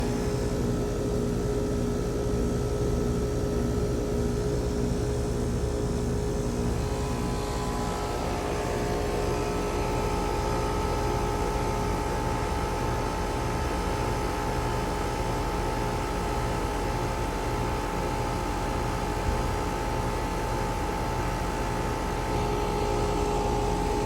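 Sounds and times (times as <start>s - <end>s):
air conditioner unit humming: 0.0s - 24.0s.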